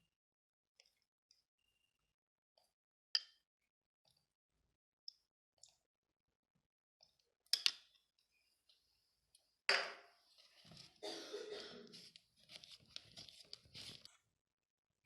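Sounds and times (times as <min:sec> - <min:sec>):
stirring and scraping batter: 0:11.9 - 0:14.2.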